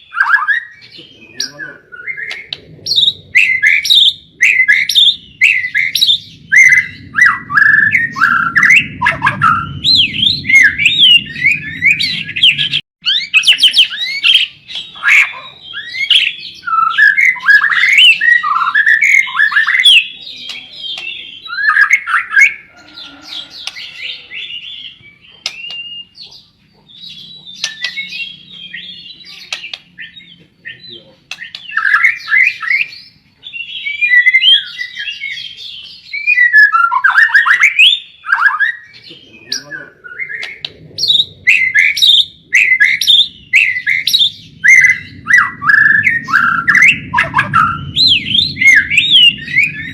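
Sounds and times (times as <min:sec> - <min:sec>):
bird singing whistled phrases: 0:00.0 - 0:26.2, 0:27.0 - 0:49.9
low background rumble: 0:40.0 - 0:49.9.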